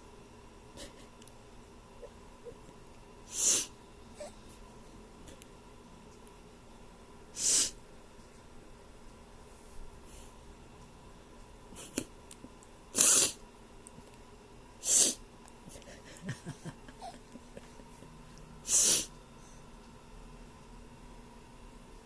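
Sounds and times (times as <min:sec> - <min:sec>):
person sniffing hard: 0:03.3 - 0:03.8, 0:07.4 - 0:07.8, 0:12.9 - 0:13.4, 0:14.8 - 0:15.2, 0:18.6 - 0:19.1.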